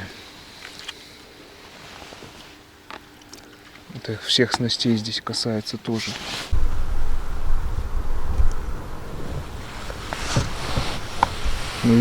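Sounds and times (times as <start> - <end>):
wind buffeting microphone: 6.5 - 12.0
water lapping around boat: 9.2 - 12.0.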